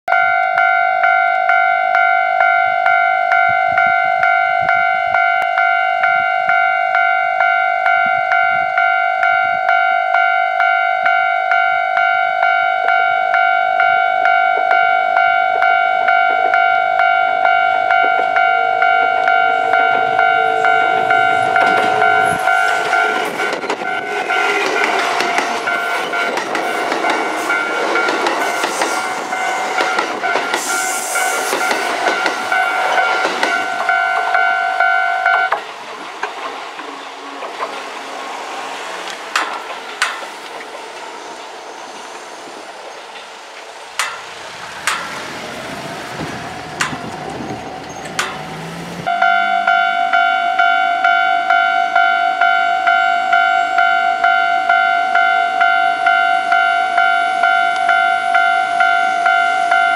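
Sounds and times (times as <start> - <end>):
level-crossing warning bell: 0.1 - 35.7, 38.6 - 41.8, 42.6 - 59.9
train wheels clattering over rail joints: 21.5 - 34.4, 35.3 - 49.1
sharp clicks: 44.0 - 45.2.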